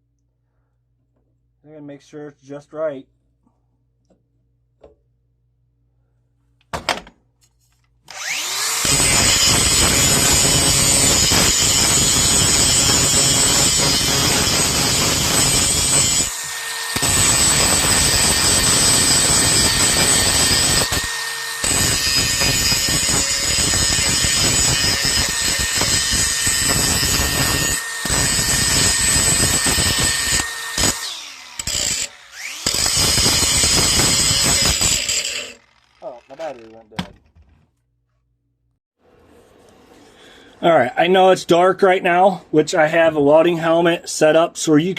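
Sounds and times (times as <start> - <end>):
power grinder whining on steel: 8.1 - 36.8.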